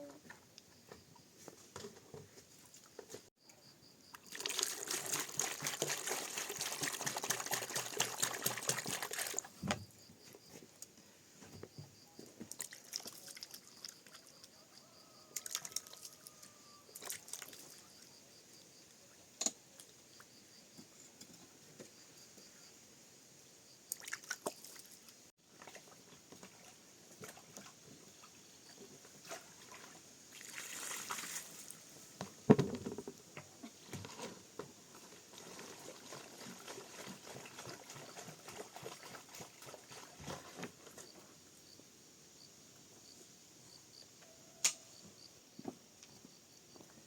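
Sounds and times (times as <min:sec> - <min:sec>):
water pouring: 0:04.2 - 0:09.6, 0:12.5 - 0:14.5, 0:17.0 - 0:18.0, 0:29.3 - 0:31.7, 0:34.9 - 0:40.7
water dripping: 0:15.3 - 0:18.0.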